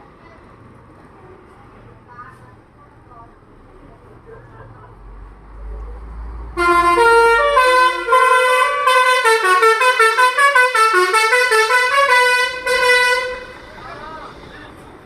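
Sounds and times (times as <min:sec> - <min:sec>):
diesel engine rumbling: 0:00.0 - 0:15.0
multi-tone air horn melody: 0:06.6 - 0:13.7.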